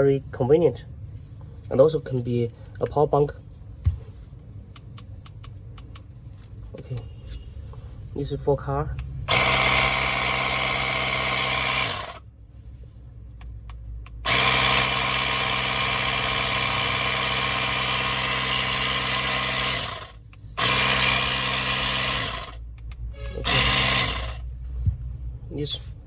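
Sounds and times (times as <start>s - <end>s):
air compressor pump humming: 9.3s - 12.2s, 14.2s - 22.6s, 23.4s - 24.4s.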